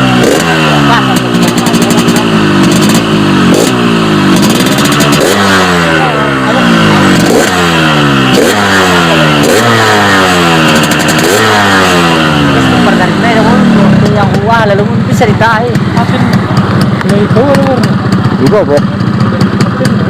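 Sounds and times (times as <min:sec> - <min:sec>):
motorcycle engine revving: 0:00.0 - 0:20.0.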